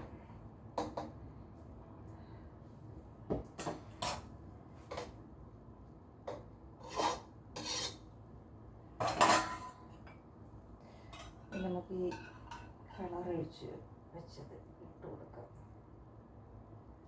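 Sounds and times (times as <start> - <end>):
metal spoon scraping pot: 6.8 - 8.1.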